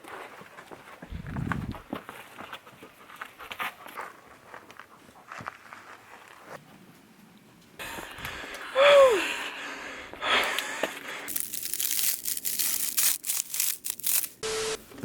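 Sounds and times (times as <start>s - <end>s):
dense crinkling and crunching: 11.3s - 14.4s.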